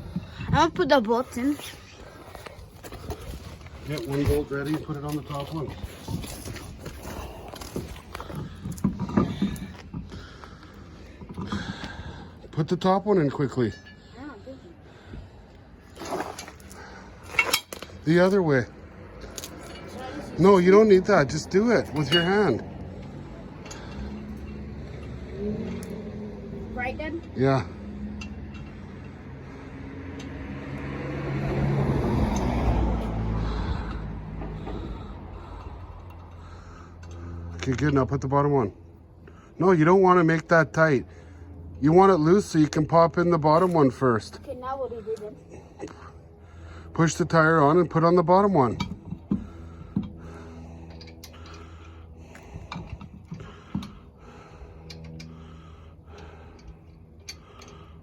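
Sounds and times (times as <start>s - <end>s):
motor vehicle passing: 0.0s - 58.0s
steady low hum: 48.6s - 58.0s.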